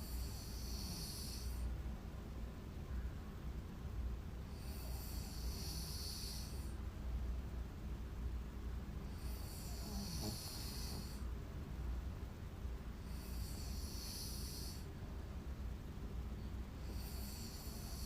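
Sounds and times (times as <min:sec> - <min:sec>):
woman snoring: 0:00.0 - 0:01.6, 0:04.5 - 0:06.7, 0:09.1 - 0:11.2, 0:13.1 - 0:14.8, 0:16.8 - 0:18.0.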